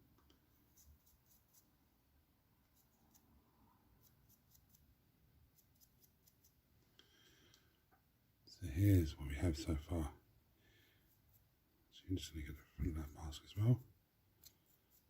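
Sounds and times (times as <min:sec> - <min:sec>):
scratchy paintbrush strokes: 0:00.3 - 0:01.8, 0:02.6 - 0:06.6, 0:10.8 - 0:11.6, 0:12.6 - 0:15.0.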